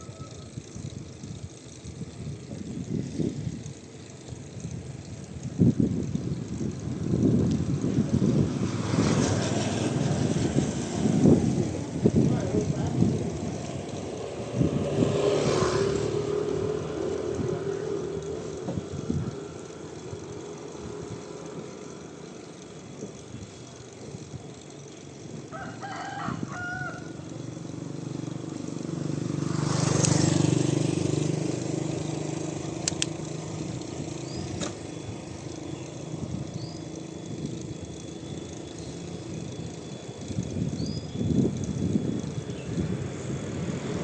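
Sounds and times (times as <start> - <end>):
rooster crowing: 0.0 - 0.6, 25.5 - 27.3
motor vehicle passing: 0.0 - 44.0
bird chirps: 40.7 - 41.2.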